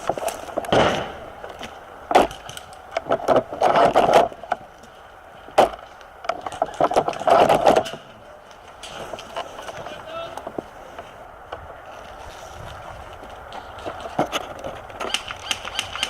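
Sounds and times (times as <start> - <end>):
sharp cracks: 0.0 - 8.1, 14.9 - 16.0
dry brush rustling and snapping: 0.0 - 16.0.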